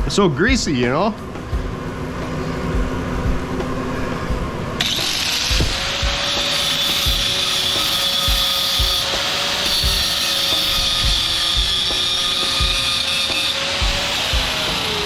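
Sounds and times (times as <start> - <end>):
low regular thumping: 0.0 - 4.6, 5.5 - 6.2, 10.8 - 12.0, 13.8 - 14.7
power tool grinding metal: 4.8 - 15.0.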